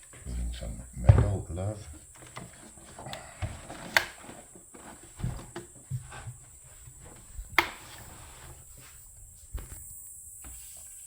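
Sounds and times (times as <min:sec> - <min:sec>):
soft thumps: 0:01.0 - 0:01.6, 0:05.1 - 0:10.6.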